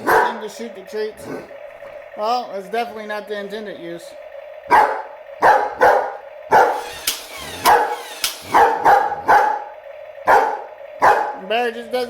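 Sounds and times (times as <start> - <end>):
dog barking: 0.0 - 0.5, 4.7 - 6.8, 7.6 - 11.4.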